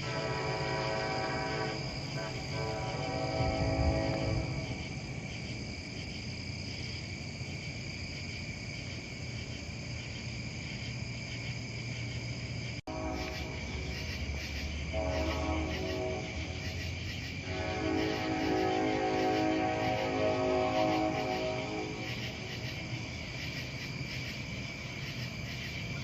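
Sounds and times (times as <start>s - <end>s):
train horn chord: 0.0s - 5.2s, 12.9s - 22.9s
insects chirring: 0.0s - 26.0s.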